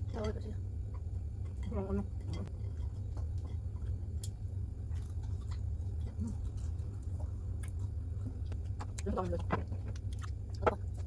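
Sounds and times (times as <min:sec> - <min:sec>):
steady low hum: 0:00.0 - 0:11.0
chewing and food handling clicks: 0:02.3 - 0:11.0.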